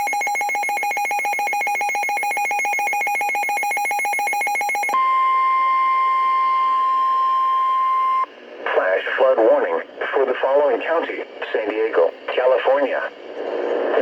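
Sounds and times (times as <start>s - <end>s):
steady alarm tone: 0.0s - 8.3s.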